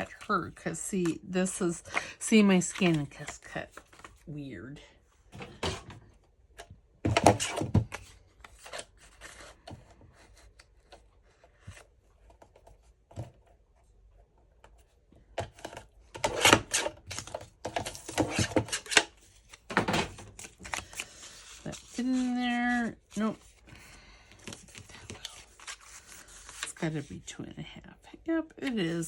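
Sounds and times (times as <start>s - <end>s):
paper rustling: 16.4s - 27.3s.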